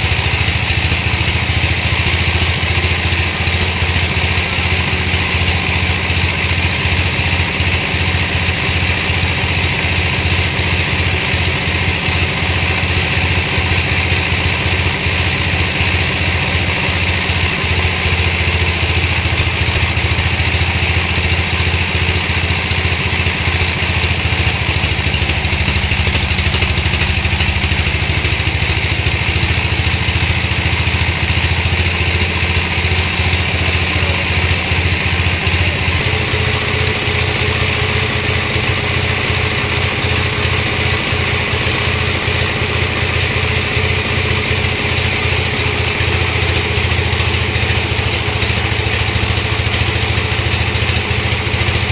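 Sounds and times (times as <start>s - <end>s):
sawmill machinery droning: 0.0s - 51.9s
steady hiss: 16.6s - 20.0s, 22.8s - 27.6s, 44.5s - 51.9s.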